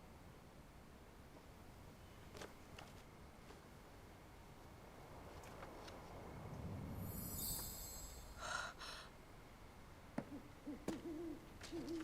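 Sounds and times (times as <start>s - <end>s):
low rumble: 6.2s - 8.5s
high shimmering chime: 7.0s - 8.5s
owl hooting: 10.2s - 12.0s.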